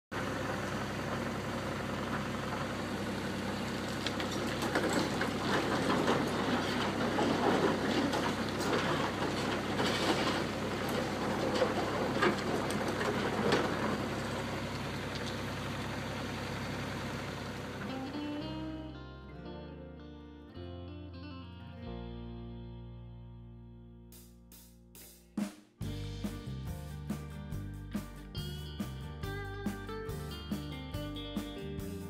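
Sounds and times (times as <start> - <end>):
excavator diesel engine running: 0.1 - 19.3
metallic clanking and scraping: 4.0 - 14.3.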